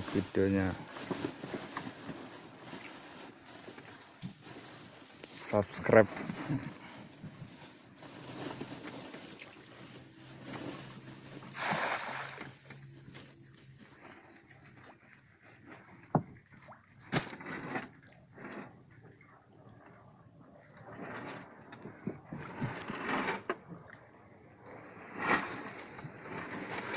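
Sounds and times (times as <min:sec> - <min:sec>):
rustling and scuffing: 0:00.0 - 0:16.1
crickets trilling: 0:00.0 - 0:26.9.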